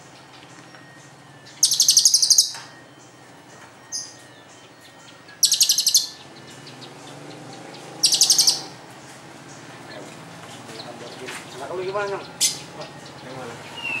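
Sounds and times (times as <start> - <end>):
bird rattling trills: 0.0 - 3.2, 3.9 - 9.7
bird chirp: 0.0 - 14.0.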